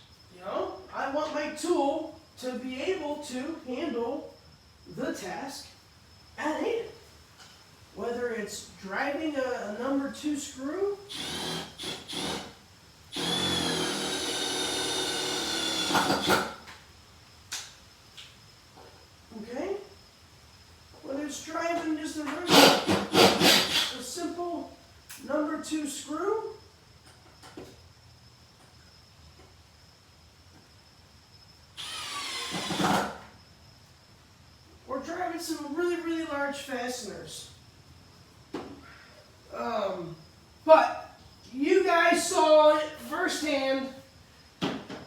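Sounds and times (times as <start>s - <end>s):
faint high-pitched whine: 0.0s - 45.0s
impact driver motor whine: 11.1s - 16.6s, 31.8s - 33.3s.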